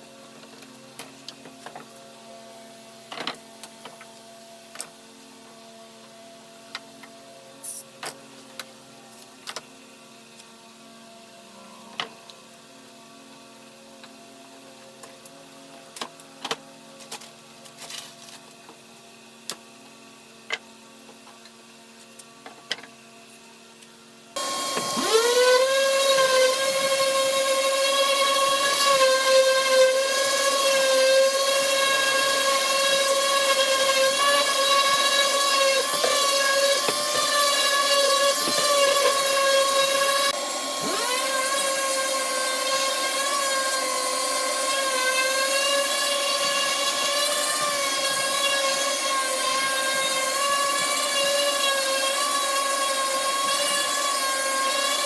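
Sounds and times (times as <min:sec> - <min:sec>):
power tool motor whining: 0:24.4 - 0:55.0.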